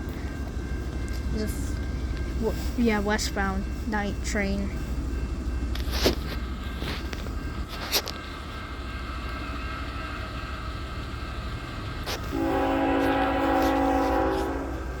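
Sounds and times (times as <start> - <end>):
freight train rumbling: 0.0 - 15.0
locomotive air horn blast: 12.1 - 15.0.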